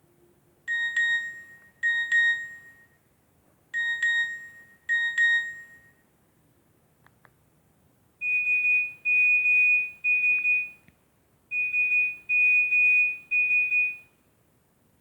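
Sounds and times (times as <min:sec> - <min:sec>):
phone ringtone long beeps: 0:00.7 - 0:03.0, 0:03.8 - 0:06.0, 0:08.2 - 0:10.8, 0:11.5 - 0:14.1.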